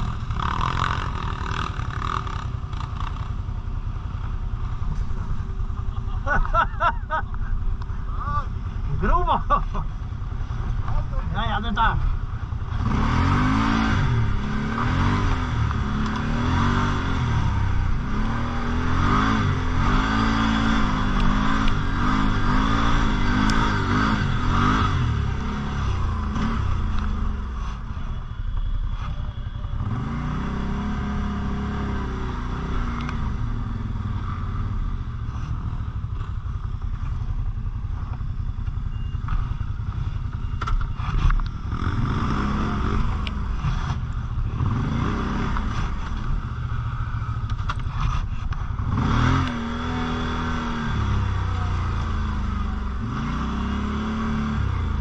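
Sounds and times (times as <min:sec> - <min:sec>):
quad engine revving: 0:00.0 - 0:03.3, 0:12.7 - 0:27.2, 0:29.8 - 0:33.2, 0:41.1 - 0:46.5, 0:48.8 - 0:55.0
clatter and scraping over rough ground: 0:00.0 - 0:07.9, 0:35.2 - 0:41.7, 0:47.3 - 0:49.6.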